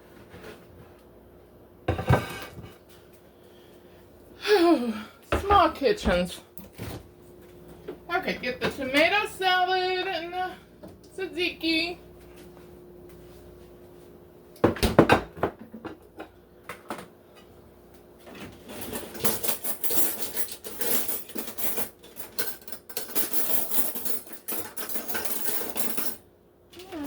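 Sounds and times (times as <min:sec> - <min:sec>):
bowls set down on counter: 0:01.9 - 0:02.8
utensil scraping dishes: 0:01.9 - 0:02.8.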